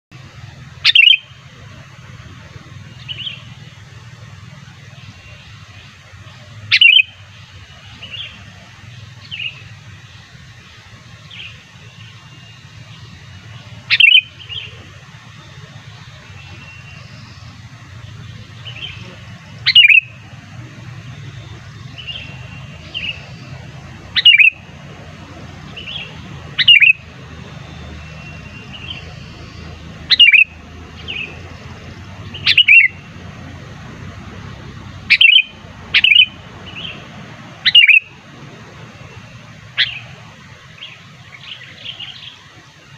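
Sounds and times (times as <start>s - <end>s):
steady low hum: 0.1s - 42.9s
bulbul chirps: 0.8s - 1.3s, 6.7s - 7.2s, 13.9s - 14.8s, 18.6s - 20.2s, 21.1s - 24.6s, 25.7s - 27.0s, 27.6s - 31.4s, 32.2s - 33.0s, 35.1s - 37.0s, 37.6s - 38.2s.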